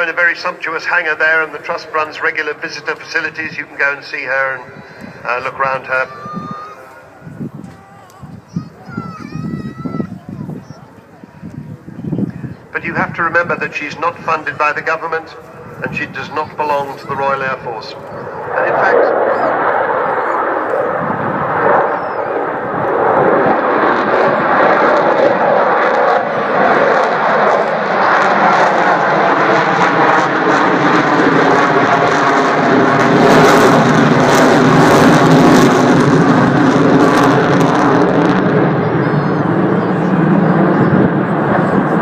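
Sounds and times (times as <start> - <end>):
jet engines roaring: 0.0 - 42.0.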